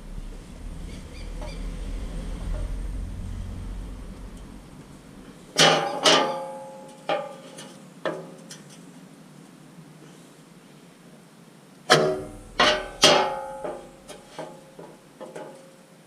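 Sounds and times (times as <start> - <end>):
hammer ringing on steel plate: 11.9 - 14.4.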